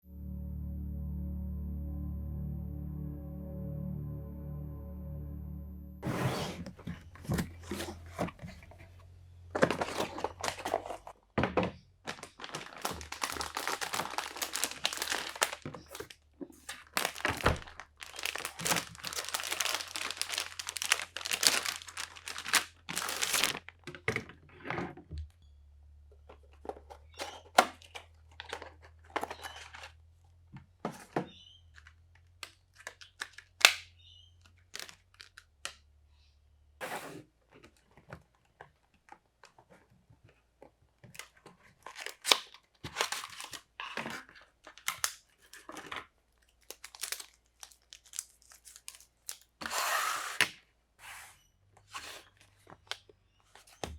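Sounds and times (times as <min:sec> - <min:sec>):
plastic crinkling and tearing: 0:09.6 - 0:11.2, 0:12.0 - 0:24.0, 0:34.4 - 0:35.8, 0:41.1 - 0:49.8.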